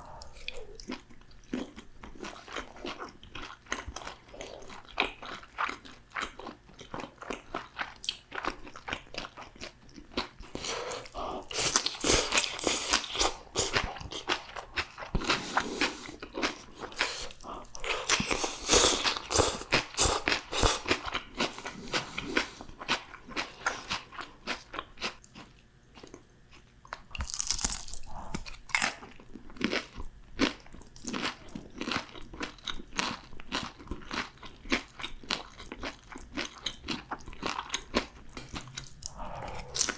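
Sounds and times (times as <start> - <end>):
crunching crispy food: 22.9 - 39.9.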